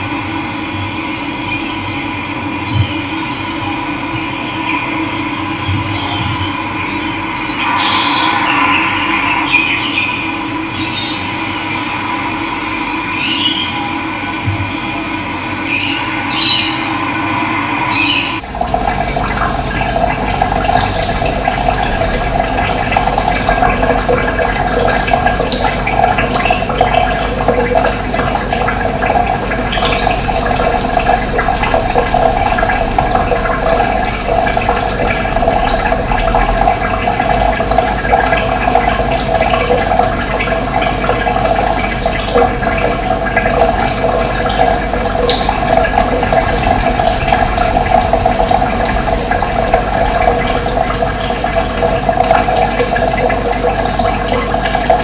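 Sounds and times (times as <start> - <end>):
running water splashing: 18.0 - 55.0.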